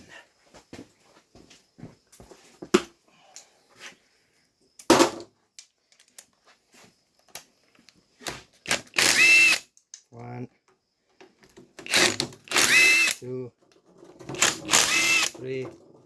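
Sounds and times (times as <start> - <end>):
metallic clicks of hand tools: 11.8 - 13.3.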